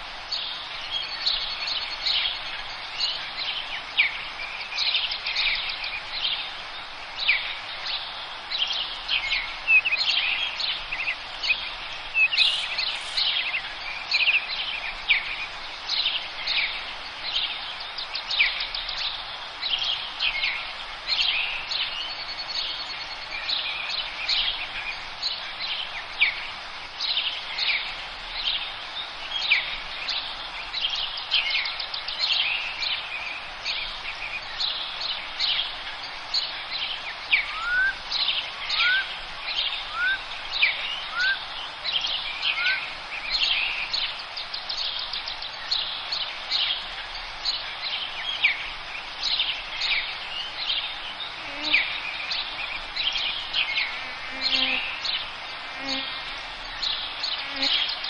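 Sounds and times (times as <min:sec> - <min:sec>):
steady background hiss: 0:00.0 - 0:58.0
birds chirping and singing: 0:08.7 - 0:14.3, 0:36.3 - 0:56.0.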